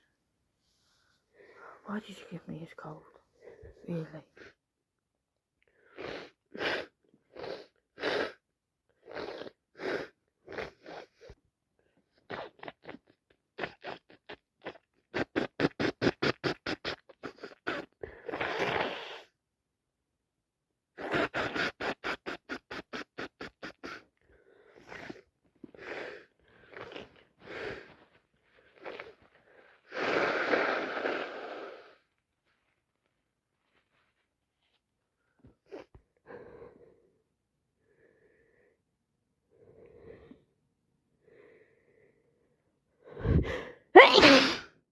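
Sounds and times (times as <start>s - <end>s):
person sniffling: 21.0s - 32.1s, 43.1s - 44.8s
person sneezing: 43.2s - 44.8s.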